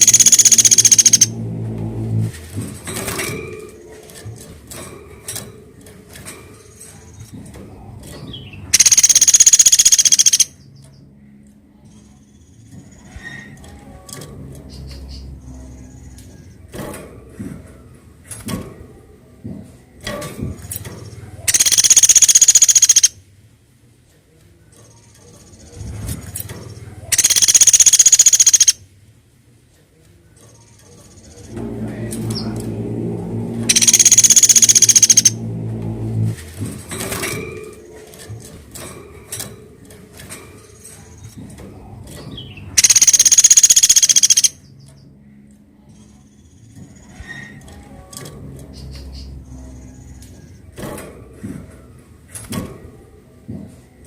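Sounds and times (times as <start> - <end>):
woodpecker rattling call: 0.0 - 1.4, 8.3 - 10.6, 21.0 - 23.2, 26.7 - 28.8, 33.6 - 35.5, 42.2 - 44.8
woodpecker rattling trill: 0.0 - 2.0, 8.1 - 10.7, 20.6 - 23.2, 24.8 - 28.8, 30.4 - 45.1
faint clicks and chirps: 8.8 - 11.6.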